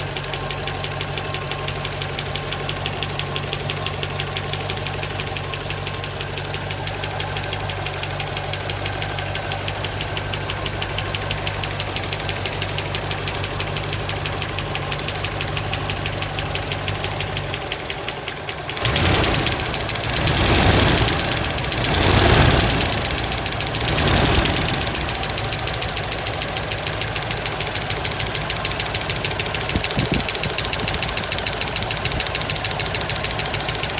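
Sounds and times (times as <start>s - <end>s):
car engine idling: 0.0s - 33.9s
fast even engine ticking: 0.0s - 33.9s
engine revving: 18.7s - 30.2s.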